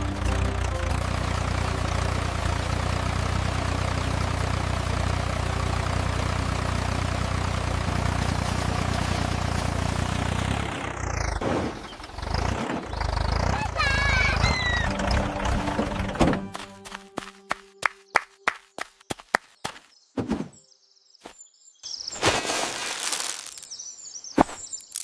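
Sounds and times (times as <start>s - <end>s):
tractor engine droning: 0.0s - 17.7s.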